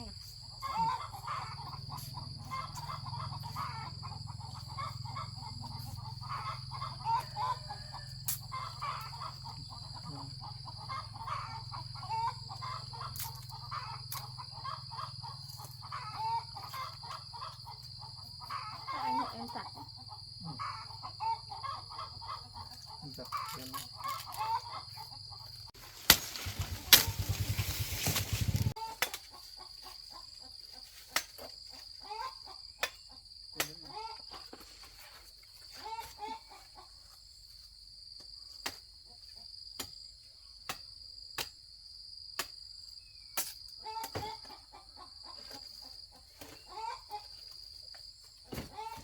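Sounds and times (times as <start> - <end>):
insects trilling: 0.0 - 49.0
chicken calls: 0.5 - 30.9, 31.7 - 33.2, 35.6 - 37.1, 43.8 - 47.6, 48.5 - 49.0.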